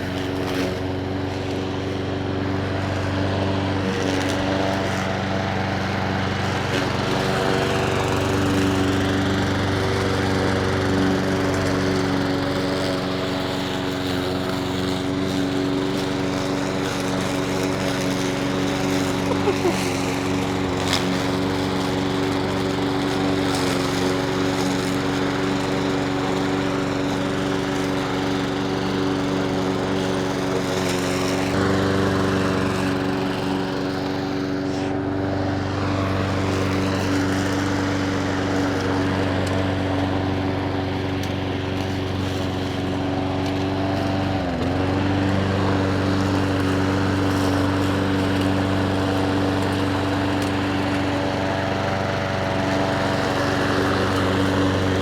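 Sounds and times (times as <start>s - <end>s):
lawn mower engine running: 0.0s - 55.0s.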